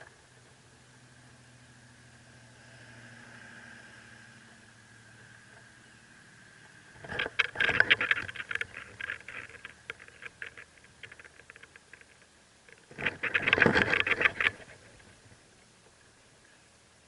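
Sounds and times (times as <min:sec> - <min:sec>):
rustling in nest: 0:07.0 - 0:15.4.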